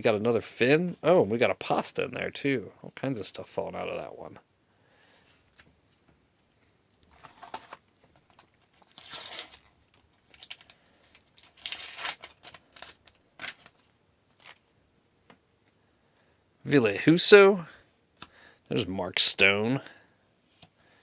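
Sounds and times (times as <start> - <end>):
paper packs ripping and crinkling: 7.2 - 14.7.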